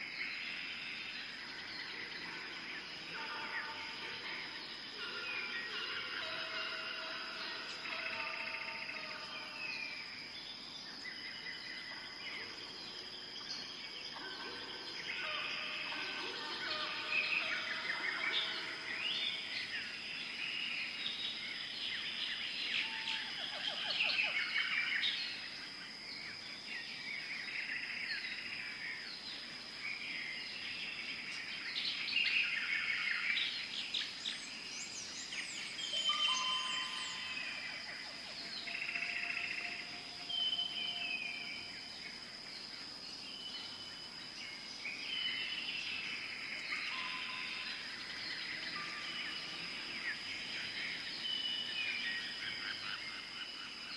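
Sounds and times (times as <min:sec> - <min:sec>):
birds chirping and calling: 0:34.0 - 0:41.7.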